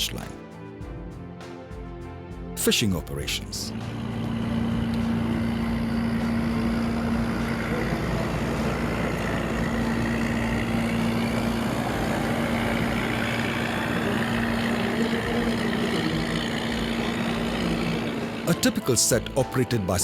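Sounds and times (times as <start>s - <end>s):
boat engine droning: 3.4s - 20.0s
rushing noise: 3.7s - 19.4s.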